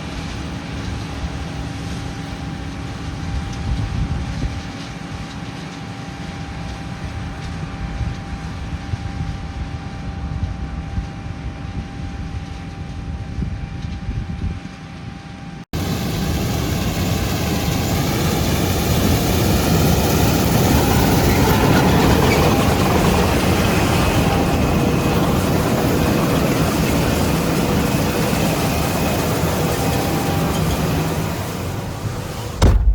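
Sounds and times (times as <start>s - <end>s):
combine harvester droning: 15.8s - 32.9s.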